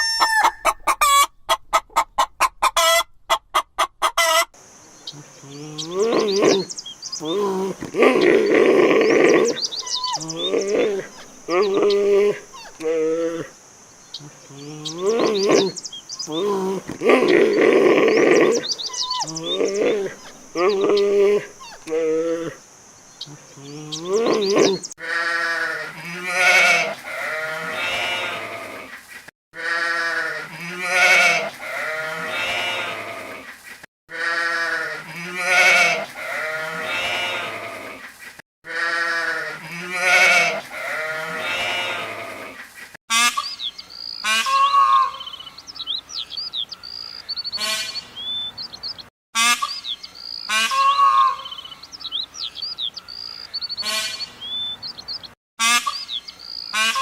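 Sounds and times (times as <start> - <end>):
high chirping calls: 9.3 - 12.8, 18.6 - 21.9, 43.2 - 57.0
livestock bleating: 23.6 - 28.9, 29.6 - 33.5, 34.1 - 38.0, 38.7 - 42.6.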